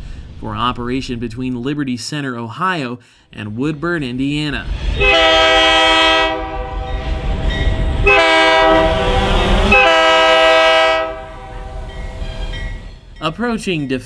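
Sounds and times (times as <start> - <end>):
train rumble: 0.0 - 14.0
locomotive air horn blasts: 5.0 - 7.2, 8.0 - 11.9.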